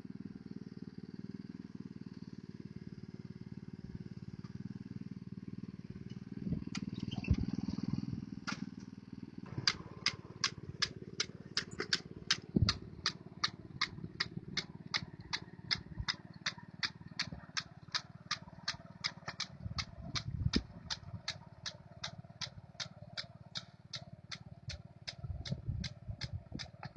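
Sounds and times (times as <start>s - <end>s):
small engine humming: 0.0s - 26.9s
regular clicking: 9.6s - 26.9s.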